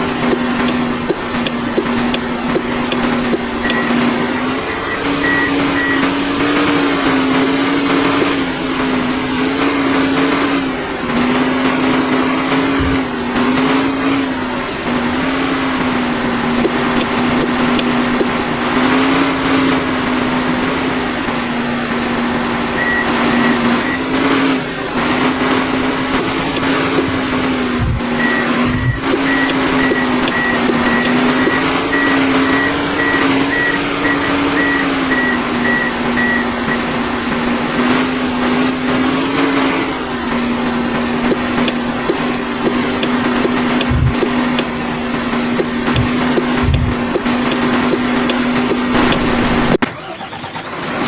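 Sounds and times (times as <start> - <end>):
backhoe loader engine droning: 0.0 - 51.0
short high electronic beeps: 3.6 - 6.2, 22.8 - 24.1, 28.2 - 36.8.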